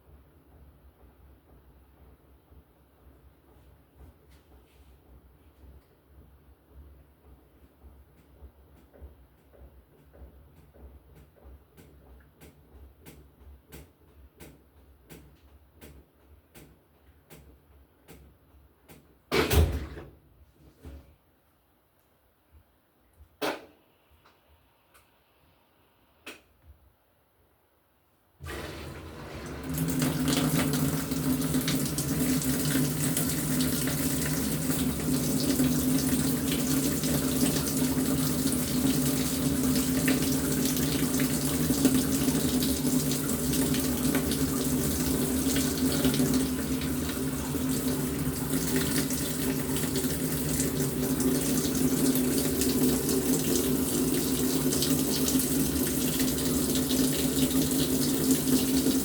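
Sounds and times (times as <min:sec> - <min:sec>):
washing machine humming: 0:28.4 - 0:59.0
water pouring into tub: 0:28.4 - 0:59.0.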